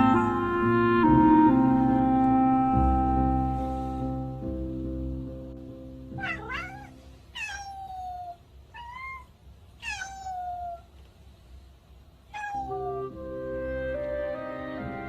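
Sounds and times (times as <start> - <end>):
background music: 0.0 - 7.0, 12.8 - 15.0
cat meowing: 6.2 - 10.9, 12.3 - 13.1.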